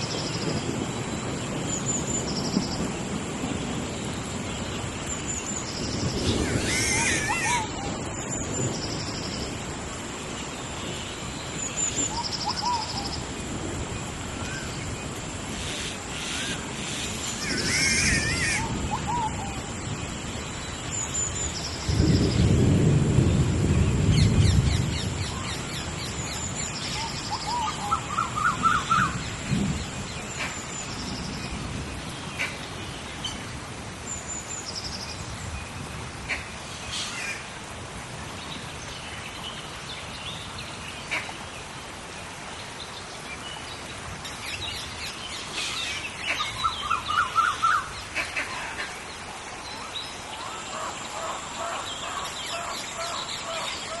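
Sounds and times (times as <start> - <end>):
deep thunder rumble: 0.0 - 10.0, 21.5 - 27.3, 28.0 - 32.3
steady rain: 0.0 - 54.0.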